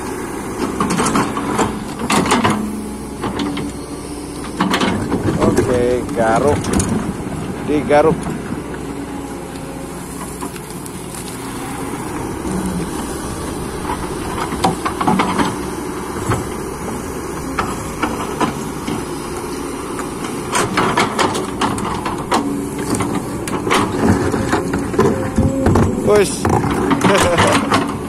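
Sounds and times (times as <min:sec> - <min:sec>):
diesel engine under load: 0:00.0 - 0:28.0
clanks of rock and steel: 0:00.6 - 0:03.8, 0:04.4 - 0:07.1, 0:20.2 - 0:28.0
bucket scraping soil and stones: 0:09.9 - 0:15.7.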